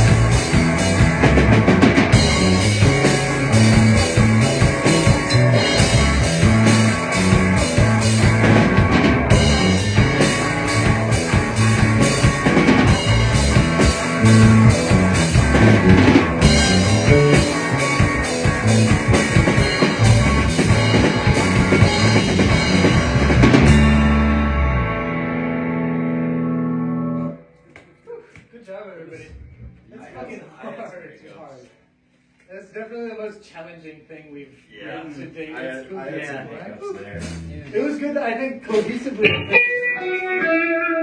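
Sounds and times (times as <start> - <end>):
rock band playing live: 0.0 - 27.5, 38.7 - 41.0.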